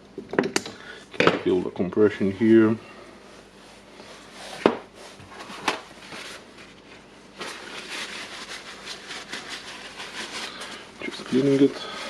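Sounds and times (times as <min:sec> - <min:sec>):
scratchy rubbing: 0:07.4 - 0:12.0.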